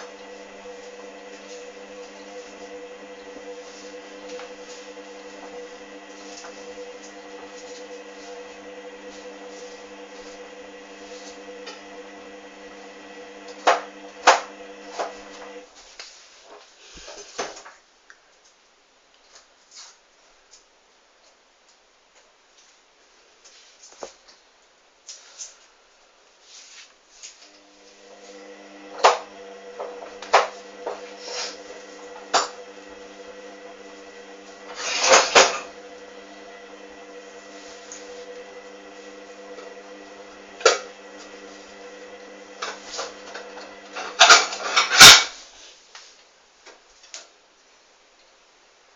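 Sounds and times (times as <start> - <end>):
washing machine drum humming: 0.0 - 15.6, 28.0 - 45.1.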